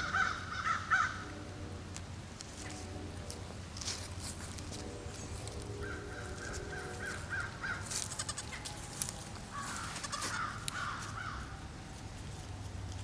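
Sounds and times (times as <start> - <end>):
bird harsh calls: 0.0 - 1.3, 5.2 - 8.3, 9.5 - 11.4.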